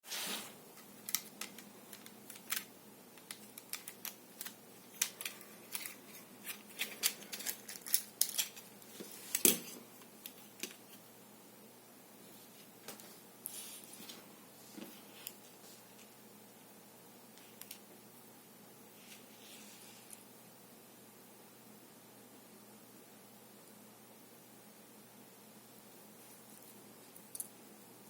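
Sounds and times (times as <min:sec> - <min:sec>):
small hard pieces clicking: 0:00.8 - 0:08.6.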